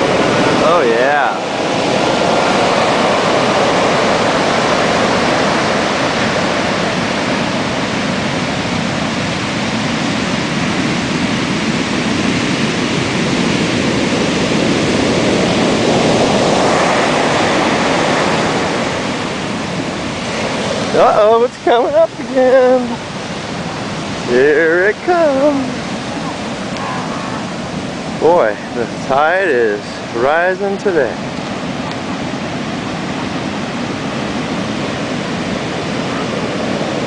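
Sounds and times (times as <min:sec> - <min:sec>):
storm waves breaking on beach: 0:00.0 - 0:37.0.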